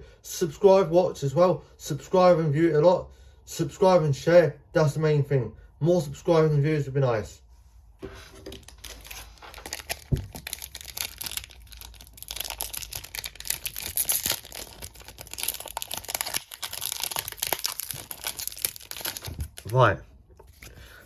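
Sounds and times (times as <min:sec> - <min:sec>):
wrapper crinkling and tearing: 0:08.5 - 0:19.9.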